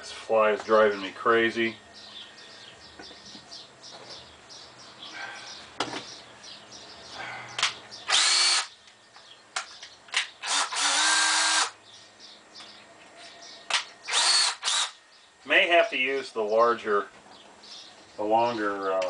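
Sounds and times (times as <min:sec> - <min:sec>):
screw gun whining: 0:08.1 - 0:08.7, 0:10.2 - 0:11.8, 0:14.1 - 0:15.0.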